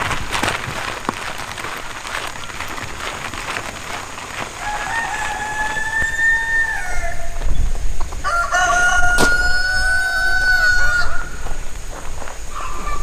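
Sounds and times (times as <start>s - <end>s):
rooster crowing: 4.6s - 7.6s, 8.2s - 11.6s.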